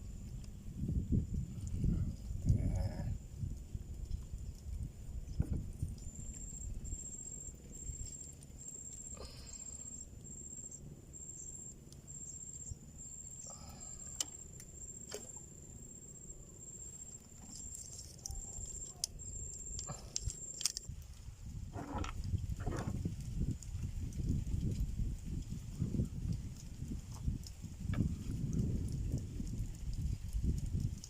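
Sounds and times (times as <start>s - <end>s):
low steady rumble: 0.0s - 31.0s
high-pitched insect chirping: 6.0s - 20.8s.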